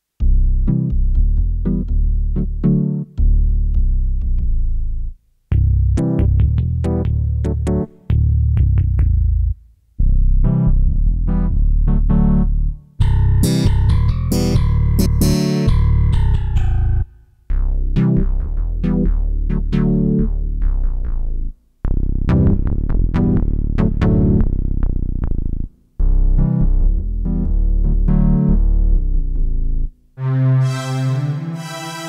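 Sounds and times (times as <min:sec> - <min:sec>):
electronic keyboard phrases: 0:10.4 - 0:17.1
keyboard long held sound: 0:10.4 - 0:17.2, 0:30.2 - 0:32.0.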